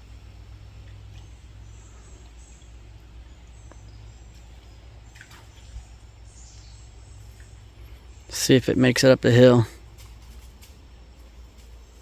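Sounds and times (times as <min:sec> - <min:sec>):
low steady rumble: 0:00.0 - 0:12.0
faint bird chirps: 0:00.8 - 0:08.7.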